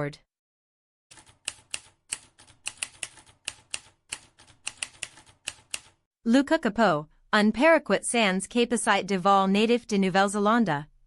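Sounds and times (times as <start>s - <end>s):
typewriter keys clacking: 1.1s - 6.0s.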